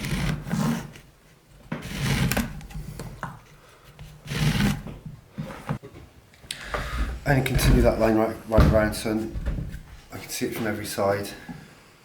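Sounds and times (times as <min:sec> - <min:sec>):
wood rubbing and scraping on workbench: 0:01.7 - 0:05.8.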